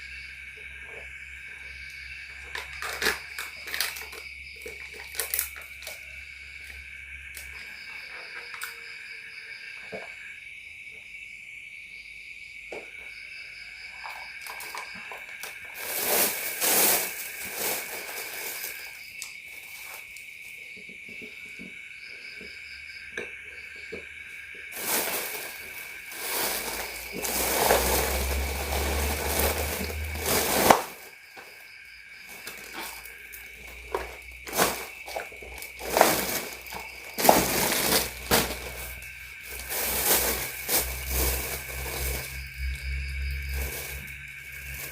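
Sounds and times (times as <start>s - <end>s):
crickets chirring: 0.0s - 44.9s
rustling: 15.8s - 20.1s, 24.7s - 31.5s, 32.3s - 42.4s.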